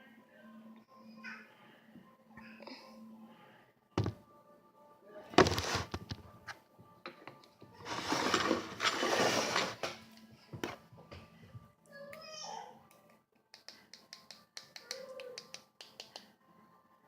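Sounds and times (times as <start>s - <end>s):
faint background music: 0.0s - 17.0s
knock: 4.0s - 4.2s.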